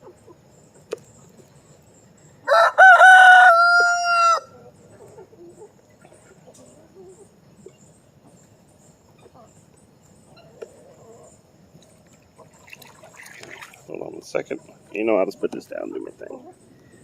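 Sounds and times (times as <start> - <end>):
rooster crowing: 2.4 - 4.7.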